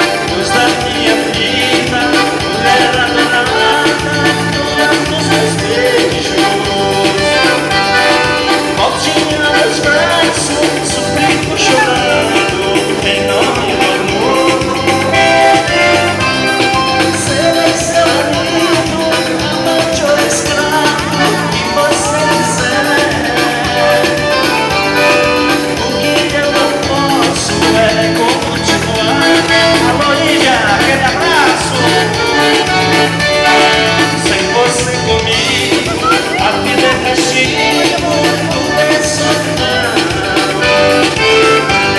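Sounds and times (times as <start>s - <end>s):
dance band playing: 0.0s - 41.9s
lead singer: 0.0s - 41.9s
repeating bass beat: 0.0s - 41.9s.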